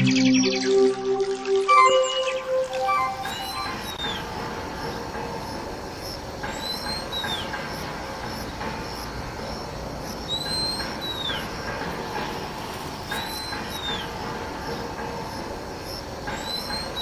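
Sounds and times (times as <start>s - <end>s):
bird whistling: 1.8s - 4.2s.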